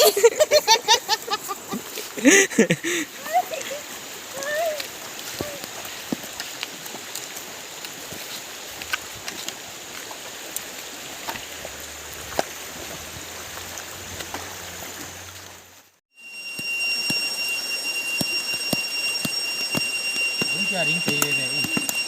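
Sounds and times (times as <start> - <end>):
stream water running: 0.0 - 22.0
steady high-pitched tones: 16.1 - 22.0.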